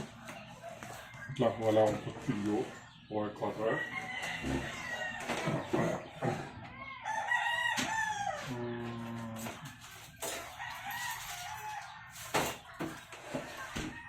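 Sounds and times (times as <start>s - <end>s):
rooster crowing: 3.7s - 5.6s, 6.6s - 9.6s, 10.3s - 12.3s.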